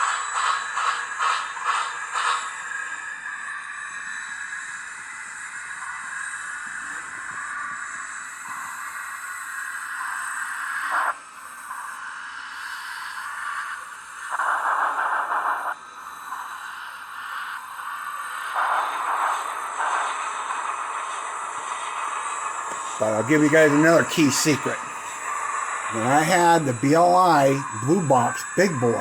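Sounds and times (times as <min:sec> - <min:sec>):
steam locomotive chuffs: 0:00.0 - 0:06.7, 0:18.2 - 0:29.0
steam hiss: 0:00.0 - 0:29.0.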